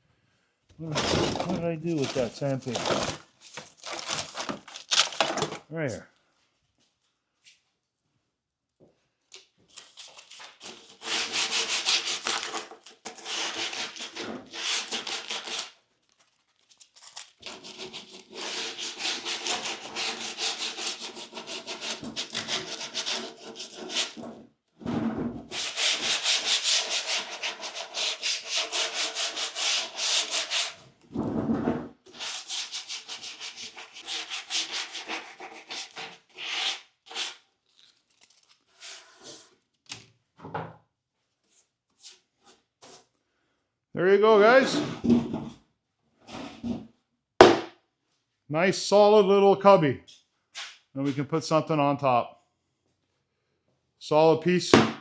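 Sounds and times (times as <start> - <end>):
hand sanding with sandpaper: 1.4 - 3.1, 10.6 - 15.8, 17.4 - 24.2, 25.5 - 30.8, 32.1 - 37.4.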